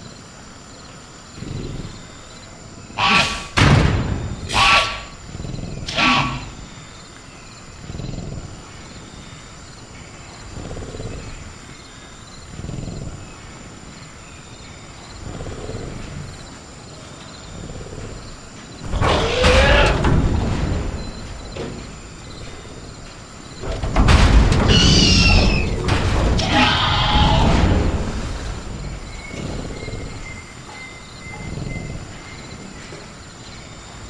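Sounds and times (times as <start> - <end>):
high cricket drone: 0.0 - 34.0
low dinosaur growls: 1.3 - 7.0, 7.6 - 9.3, 10.2 - 11.8, 12.4 - 24.0, 24.6 - 34.0
shrill dinosaur calls: 2.9 - 3.6, 4.4 - 6.8, 18.9 - 20.1, 24.6 - 25.8, 26.4 - 27.9.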